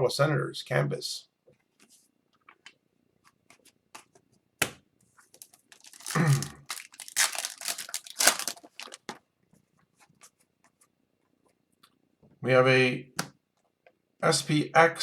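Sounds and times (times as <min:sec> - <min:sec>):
foil wrapper tearing and crinkling: 0:05.4 - 0:09.2.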